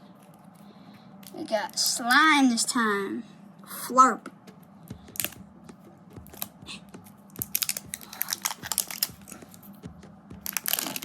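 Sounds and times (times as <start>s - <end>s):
plastic packaging crinkling: 7.3s - 9.7s, 10.4s - 11.0s.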